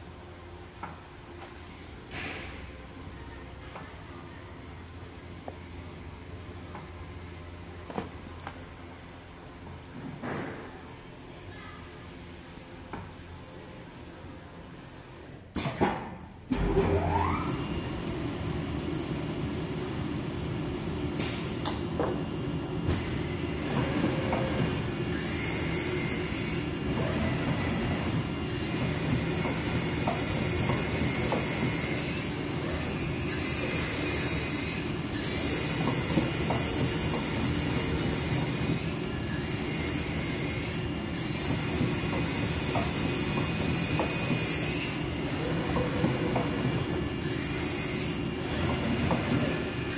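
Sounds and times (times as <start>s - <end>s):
high machine whine: 22.2s - 49.9s.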